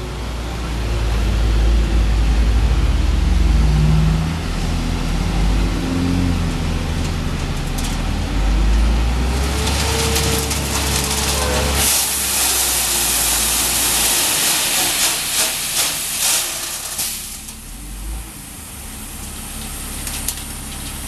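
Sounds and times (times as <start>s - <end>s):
rushing crackling noise: 6.4s - 17.6s.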